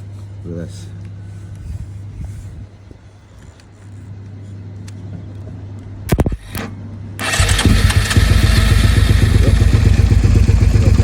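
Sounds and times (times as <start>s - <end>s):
motorcycle engine running: 7.2s - 11.0s.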